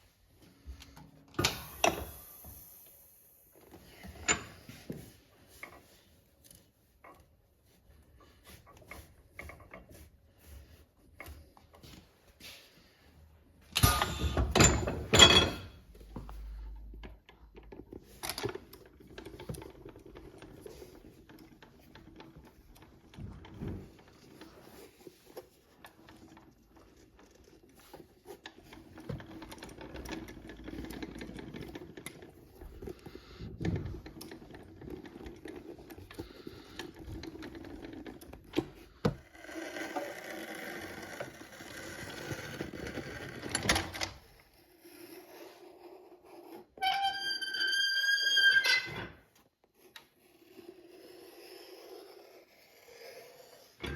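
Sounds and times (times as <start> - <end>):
sewing machine stitching: 17.0 - 25.0, 25.8 - 45.1.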